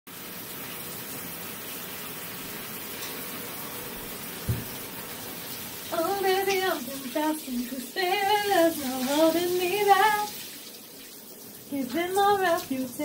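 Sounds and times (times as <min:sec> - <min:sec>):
shower water running: 0:00.1 - 0:13.0
low thump: 0:04.5 - 0:04.8.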